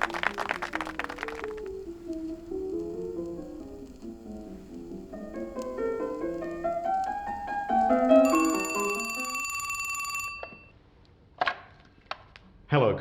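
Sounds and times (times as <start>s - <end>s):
telephone ringing with trilling bell: 7.7s - 10.7s.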